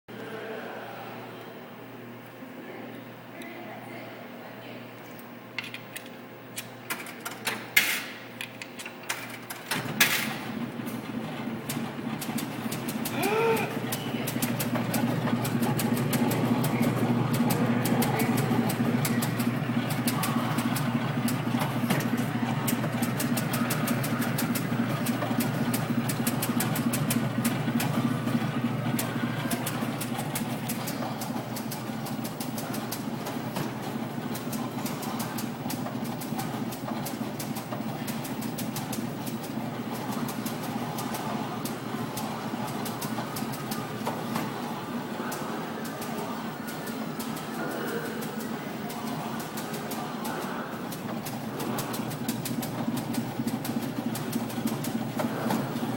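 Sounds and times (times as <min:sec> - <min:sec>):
motor hum: 0:05.9 - 0:55.9.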